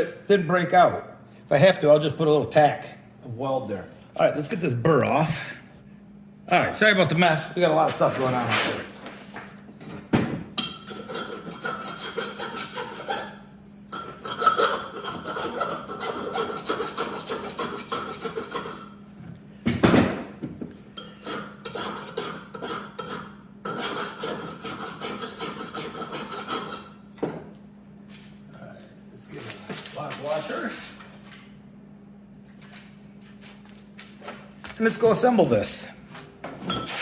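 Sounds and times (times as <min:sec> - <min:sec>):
metal rasping: 0:10.6 - 0:13.4, 0:14.2 - 0:18.9, 0:21.0 - 0:26.9.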